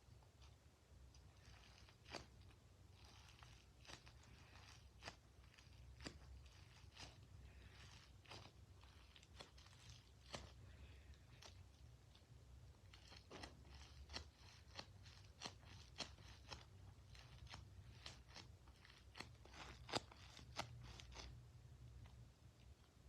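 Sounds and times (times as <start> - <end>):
squishy toy crackling: 12.8 - 21.4.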